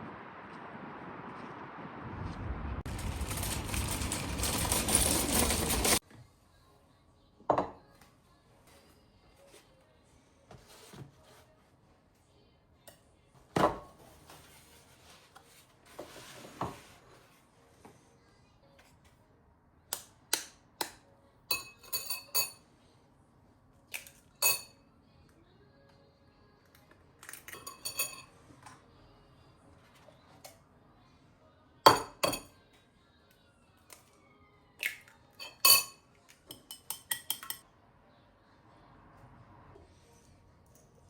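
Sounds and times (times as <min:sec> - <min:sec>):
dishes and glassware clinking: 0:21.5 - 0:22.6, 0:24.4 - 0:24.8, 0:27.3 - 0:28.4, 0:31.9 - 0:32.5, 0:35.4 - 0:37.6.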